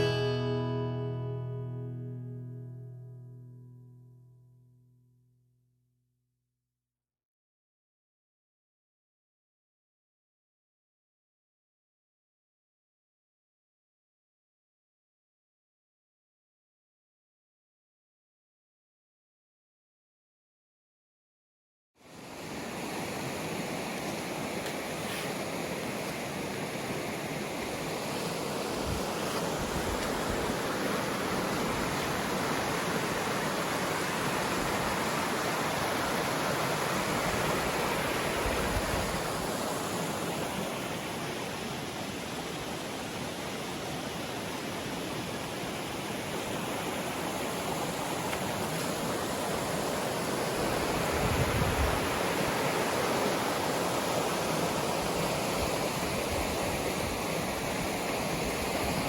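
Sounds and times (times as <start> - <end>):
creek water rushing: 22.0 - 59.0.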